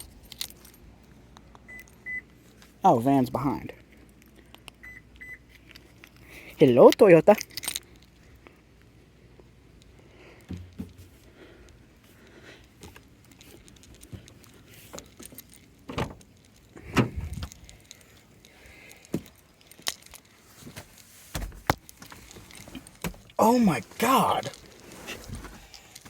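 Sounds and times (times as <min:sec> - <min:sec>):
car keys jangling: 0:00.0 - 0:00.8, 0:07.3 - 0:08.2, 0:13.1 - 0:16.8.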